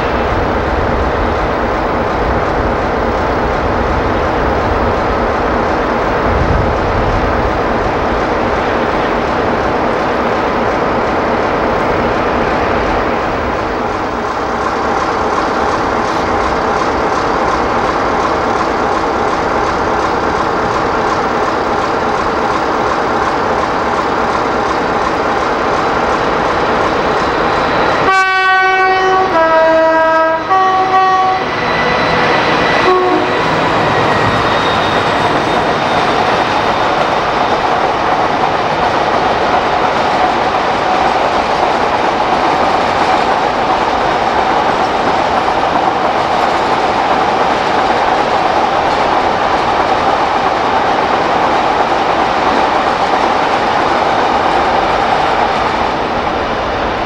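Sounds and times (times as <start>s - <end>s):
diesel locomotive rumbling: 0.0s - 57.0s
rail clatter: 0.0s - 57.0s
two-tone train horn: 27.9s - 35.9s.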